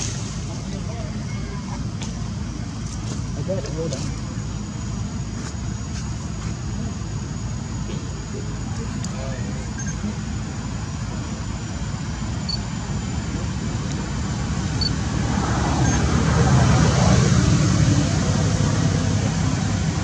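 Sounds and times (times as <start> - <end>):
vehicle passing by: 14.6 - 20.0.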